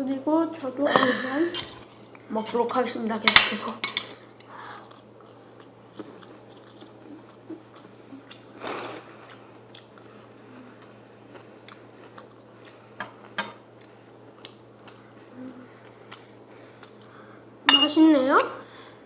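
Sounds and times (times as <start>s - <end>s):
person chewing food: 4.4s - 17.1s.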